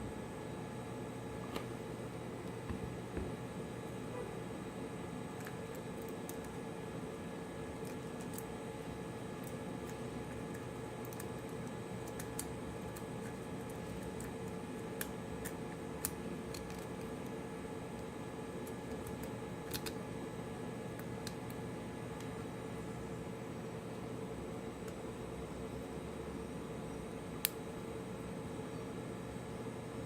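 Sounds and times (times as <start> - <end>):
background hum and hiss: 0.0 - 30.0.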